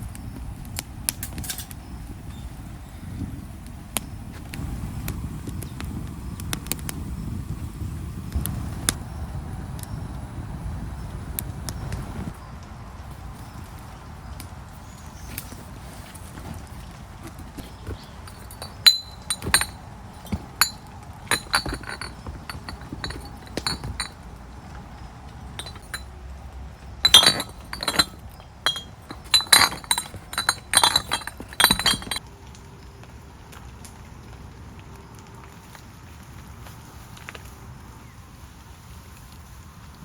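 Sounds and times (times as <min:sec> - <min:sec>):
small hard objects clinking: 0:16.3 - 0:24.4, 0:25.3 - 0:26.2, 0:26.8 - 0:32.2.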